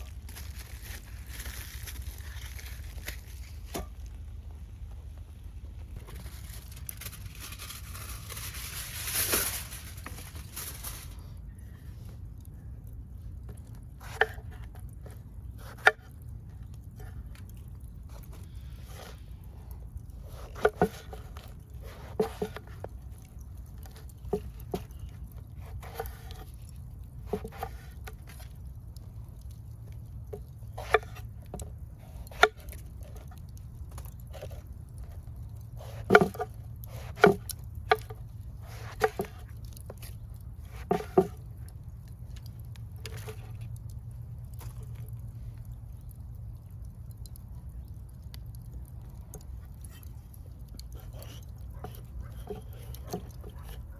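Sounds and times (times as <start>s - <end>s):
steady low rumble: 0.0s - 20.4s.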